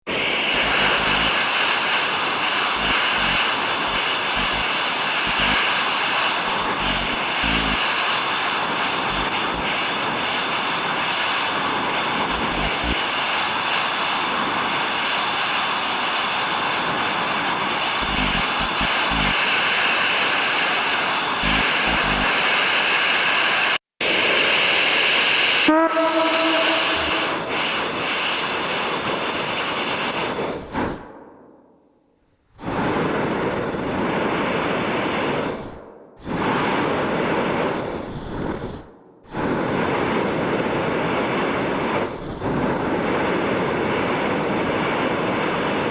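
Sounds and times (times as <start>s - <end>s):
television static hiss: 0.3s - 14.4s, 17.6s - 24.9s
buzzing tone: 0.5s - 9.8s, 12.0s - 13.4s, 17.8s - 19.6s, 21.4s - 22.6s, 25.6s - 28.0s.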